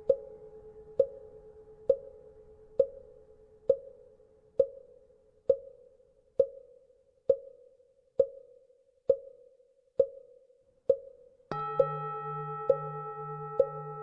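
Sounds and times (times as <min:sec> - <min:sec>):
temple bell hum: 0:11.5 - 0:14.0.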